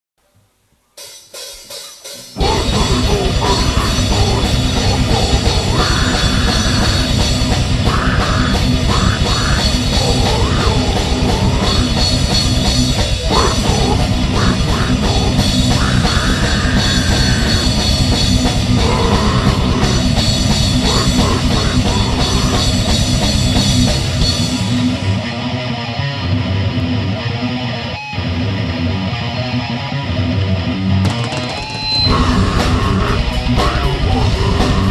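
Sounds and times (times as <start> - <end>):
drum kit: 1.0 - 26.6, 30.6 - 34.9
distorted electric guitar: 1.6 - 34.9
bass guitar: 2.2 - 34.9.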